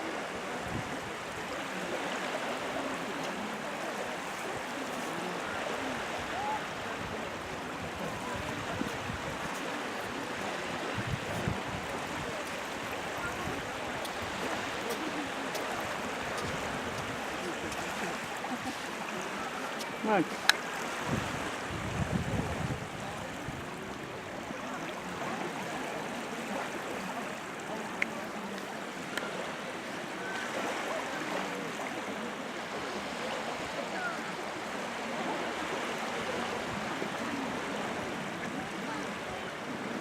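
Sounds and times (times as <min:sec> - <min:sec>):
waves washing onto shore: 0:00.0 - 0:40.0.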